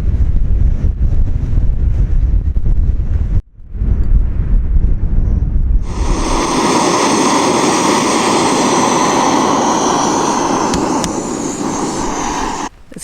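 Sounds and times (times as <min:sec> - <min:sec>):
wind buffeting microphone: 0:00.0 - 0:12.9
gas stove burner hissing: 0:05.8 - 0:12.8.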